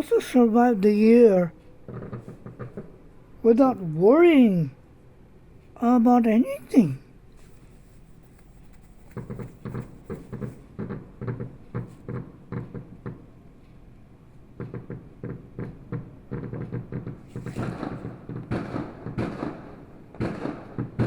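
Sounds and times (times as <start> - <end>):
fireworks popping: 8.3 - 12.7, 14.7 - 21.0.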